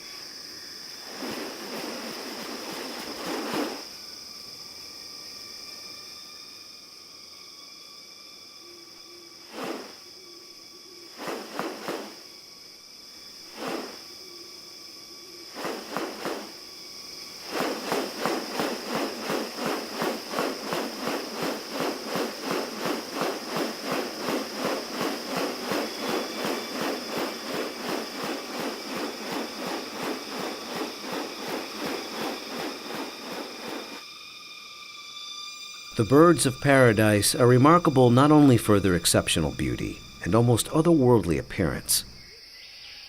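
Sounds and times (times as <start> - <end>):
high insect drone: 0.0 - 43.0
rapid rasping pulses: 11.2 - 12.3, 15.5 - 34.0.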